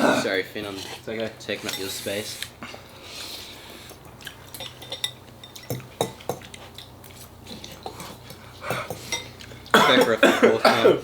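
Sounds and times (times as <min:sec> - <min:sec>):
utensils clinking on dishes: 0:04.0 - 0:06.6, 0:07.5 - 0:11.0.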